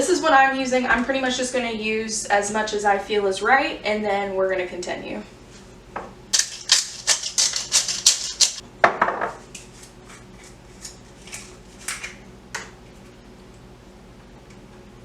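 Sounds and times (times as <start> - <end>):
spice shakers rattling: 6.3 - 8.6.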